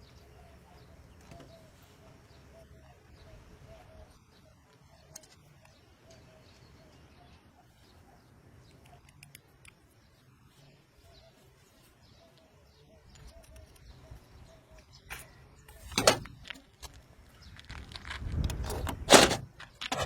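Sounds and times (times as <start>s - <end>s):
faint bird calls: 0.0s - 9.4s.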